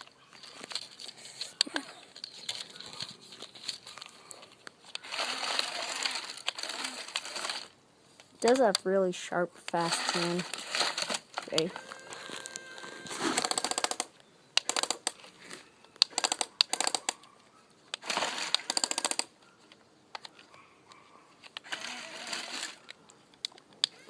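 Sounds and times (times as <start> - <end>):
toy motor and gears ratcheting: 4.9 - 7.7, 9.7 - 15.2, 16.0 - 17.2, 17.9 - 19.3, 21.6 - 22.9.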